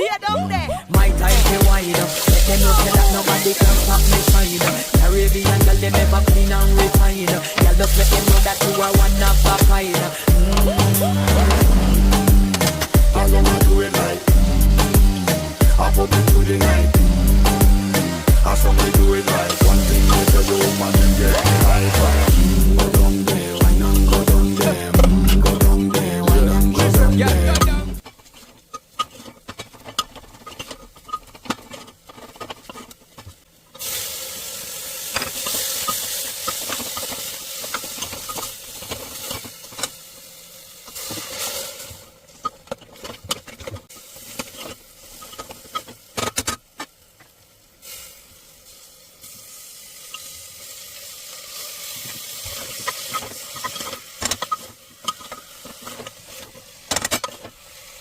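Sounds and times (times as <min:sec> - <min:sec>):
chicken sizzling in a pan: 0:01.2 - 0:10.8, 0:11.5 - 0:24.6, 0:33.8 - 0:42.3, 0:43.9 - 0:46.2, 0:46.9 - 0:56.9, 0:57.5 - 0:58.0
spatula scraping a pan: 0:01.3 - 0:05.7, 0:28.0 - 0:34.0, 0:51.9 - 0:58.0.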